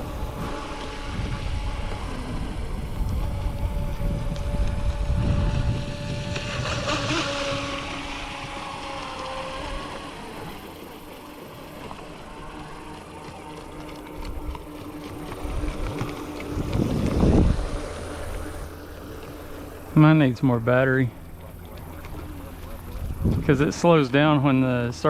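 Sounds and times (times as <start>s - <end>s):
wind on microphone: 0.0s - 10.4s, 14.2s - 20.0s, 21.2s - 23.9s
rc boat motor whining: 0.0s - 25.0s.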